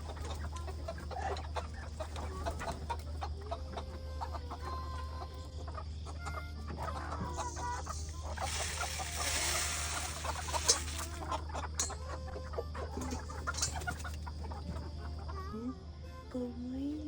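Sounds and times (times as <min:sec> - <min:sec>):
chickens clucking: 0:00.0 - 0:15.7
hiss: 0:08.2 - 0:11.1.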